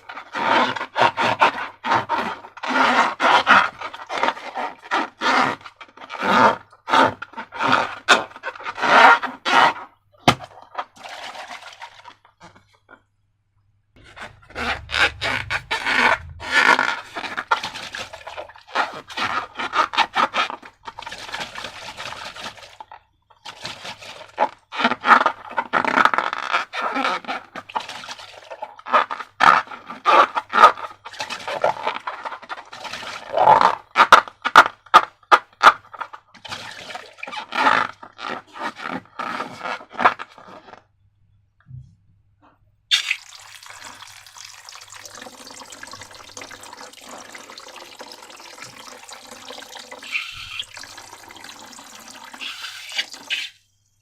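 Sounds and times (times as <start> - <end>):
slime being stirred and squished: 0.0 - 12.9, 14.0 - 40.9, 42.9 - 53.7
running water: 14.1 - 24.3, 42.9 - 54.0.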